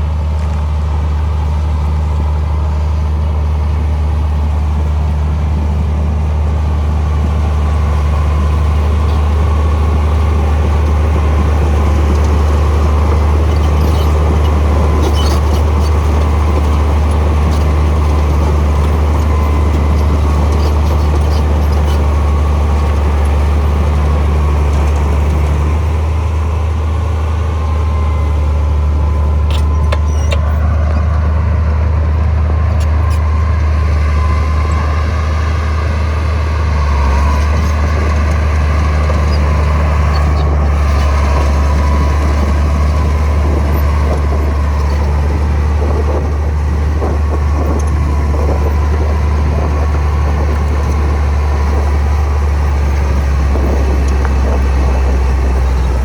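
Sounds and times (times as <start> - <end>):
heavy diesel engine droning: 0.0 - 56.0.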